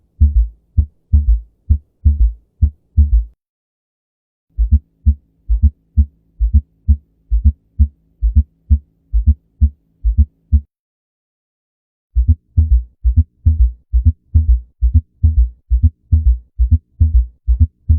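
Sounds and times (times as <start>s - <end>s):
steady low hum: 0.0s - 3.4s, 12.2s - 17.9s
heartbeat thumps: 0.2s - 3.4s, 4.6s - 10.7s, 12.2s - 17.9s.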